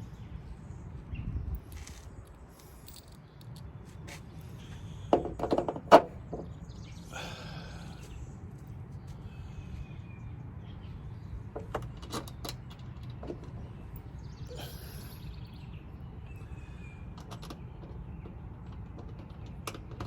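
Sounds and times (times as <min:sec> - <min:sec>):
sharp clicks and knocks: 0:17.2 - 0:20.0.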